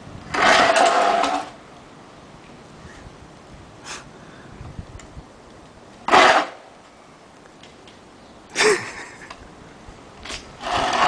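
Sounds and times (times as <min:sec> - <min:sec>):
skis scraping over asphalt: 0:00.3 - 0:01.6, 0:06.0 - 0:06.6, 0:10.3 - 0:11.0.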